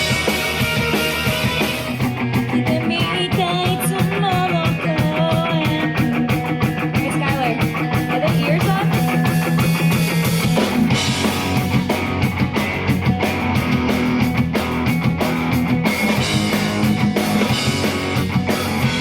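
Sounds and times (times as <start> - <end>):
rock pop song over loudspeakers: 0.0 - 19.0.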